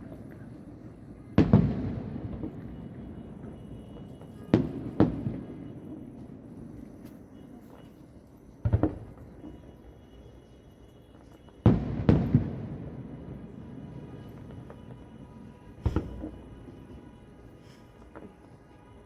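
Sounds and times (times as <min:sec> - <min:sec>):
distant firework booms: 0:15.8 - 0:16.7.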